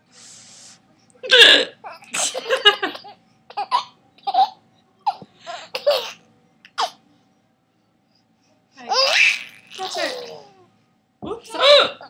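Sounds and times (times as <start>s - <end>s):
baby laughing: 8.9s - 10.4s.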